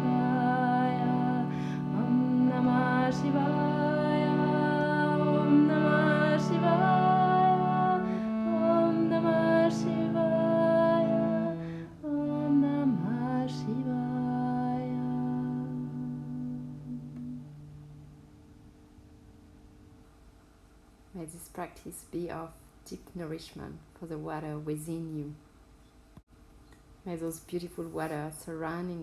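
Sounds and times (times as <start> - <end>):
woman chanting: 0.0 - 17.4.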